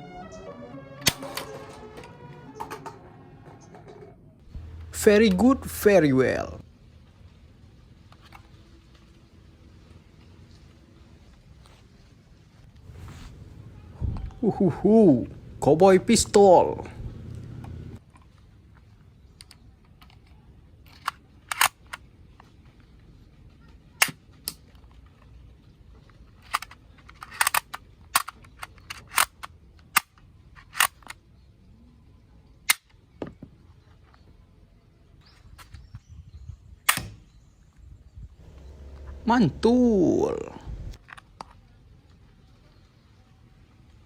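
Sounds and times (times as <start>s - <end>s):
toy pistol cracks: 21.0s - 22.0s, 26.5s - 31.2s.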